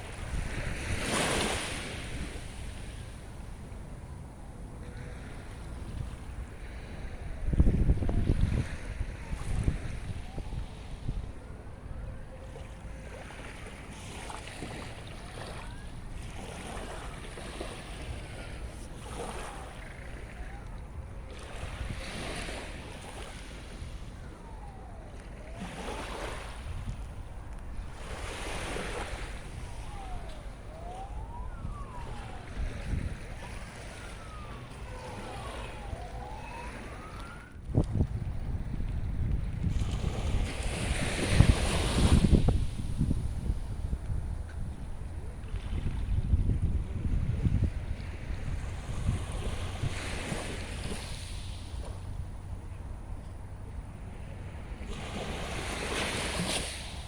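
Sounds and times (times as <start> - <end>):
sea waves washing on shore: 0.0 - 57.0
wind rumble on microphone: 0.0 - 57.0
wind gust hitting microphone: 29.2 - 50.0
gulls crying: 29.4 - 37.6.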